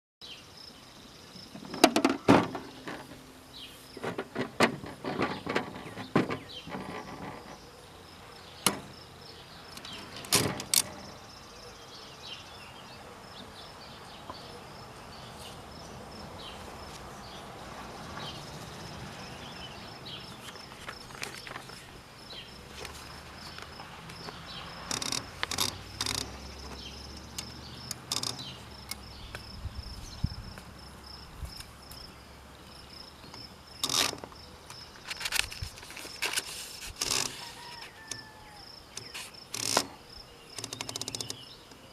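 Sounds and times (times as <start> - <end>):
metal table rattling: 1.6 - 3.2, 4.0 - 7.7, 8.6 - 9.0, 9.8 - 11.2, 24.8 - 26.8, 27.4 - 28.6.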